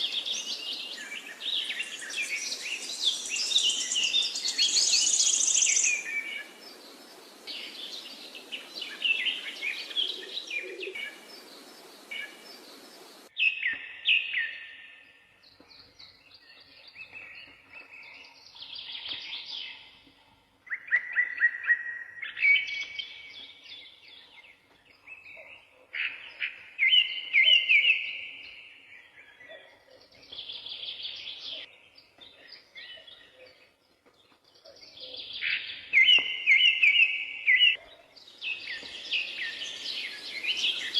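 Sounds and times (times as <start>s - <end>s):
background hiss: 0.0s - 13.4s, 38.1s - 40.9s
small birds chirping: 0.0s - 40.9s.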